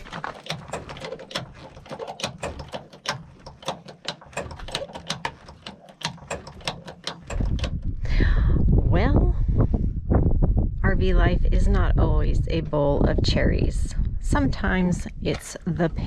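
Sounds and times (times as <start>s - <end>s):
ratchet wrench clicking: 0.2s - 7.9s
low rumble: 7.5s - 16.0s.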